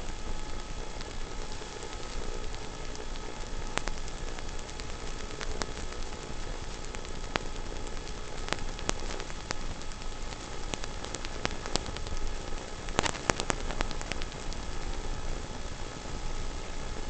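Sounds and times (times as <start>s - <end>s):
stones ticking: 0.5s - 15.0s.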